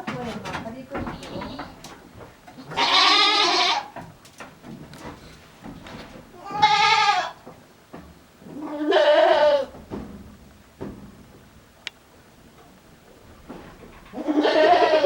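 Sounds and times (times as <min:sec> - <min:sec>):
goat bleating: 0:01.0 - 0:01.9, 0:02.5 - 0:04.0, 0:06.4 - 0:07.4, 0:08.6 - 0:09.7, 0:14.1 - 0:15.0.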